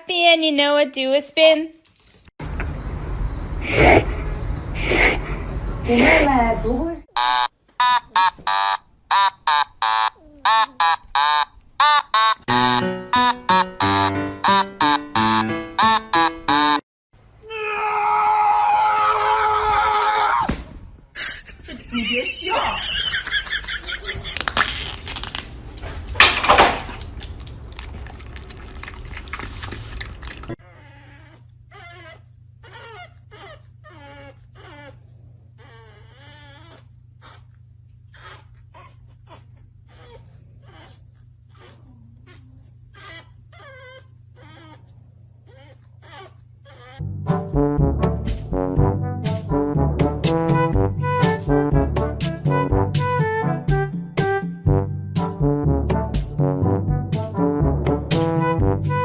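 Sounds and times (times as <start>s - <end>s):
melody of short pitched notes: 12.4s - 16.8s
dog whining and whimpering: 30.5s - 37.5s, 38.1s - 47.0s.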